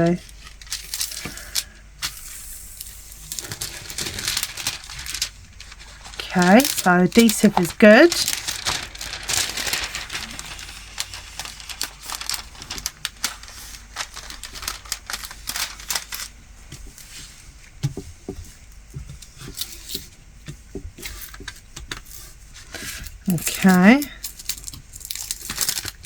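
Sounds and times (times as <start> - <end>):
plastic crinkling: 0.0 - 17.2, 20.9 - 26.0
small clicks and rustles: 2.8 - 17.1.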